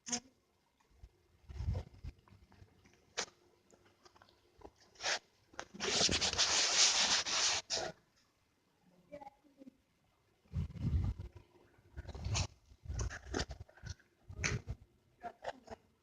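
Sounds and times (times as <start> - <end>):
loud rubbing scraping: 5.8 - 7.9.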